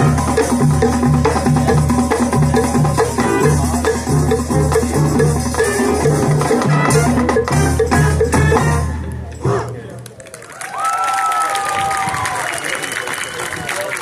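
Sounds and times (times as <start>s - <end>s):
marching band playing: 0.0s - 10.1s.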